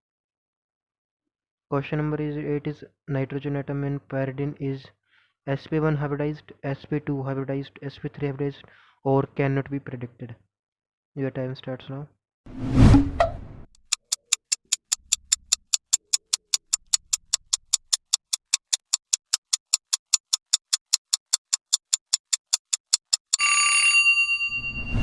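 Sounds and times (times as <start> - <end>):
countdown timer ticking: 13.8 - 23.5
ringing chime: 23.4 - 25.0.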